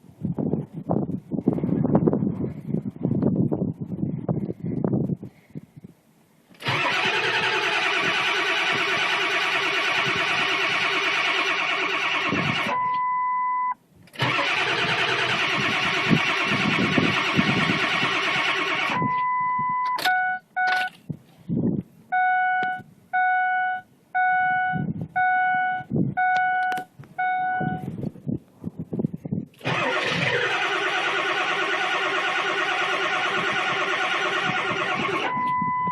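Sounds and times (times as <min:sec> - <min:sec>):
diesel engine cranking: 0:06.5 - 0:13.0, 0:14.0 - 0:21.1, 0:29.5 - 0:35.9
steady beep: 0:12.7 - 0:13.8, 0:18.9 - 0:21.0, 0:22.1 - 0:27.9, 0:34.8 - 0:35.9.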